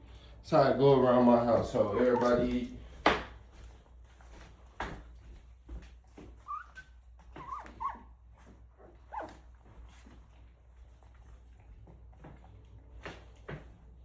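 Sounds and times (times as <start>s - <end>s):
puppies whimpering: 1.8s - 2.5s.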